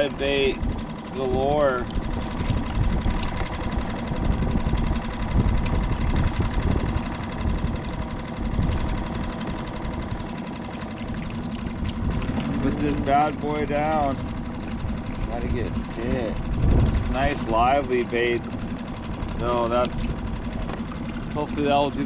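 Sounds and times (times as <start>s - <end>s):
outboard motor running: 0.0s - 22.0s.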